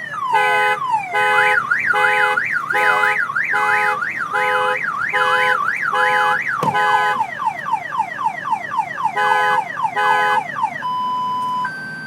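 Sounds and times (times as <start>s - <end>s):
car alarm siren: 0.0s - 12.0s
sharp click or thump: 6.6s - 6.8s.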